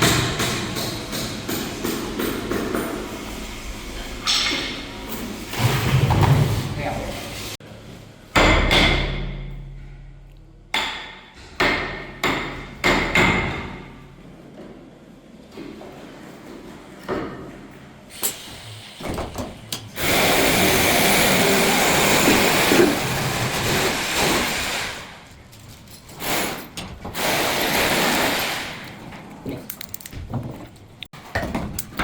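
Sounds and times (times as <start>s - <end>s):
power saw cutting wood: 20.0s - 25.0s.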